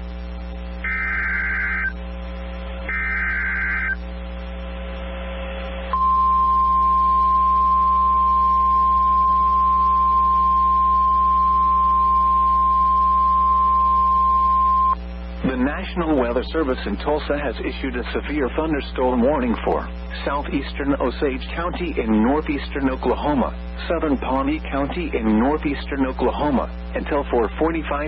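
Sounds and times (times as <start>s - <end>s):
receiver low hum: 0.0s - 28.0s
digital data squawk: 0.8s - 2.0s, 2.9s - 4.0s
steady alarm tone: 0.8s - 4.0s, 5.9s - 15.0s.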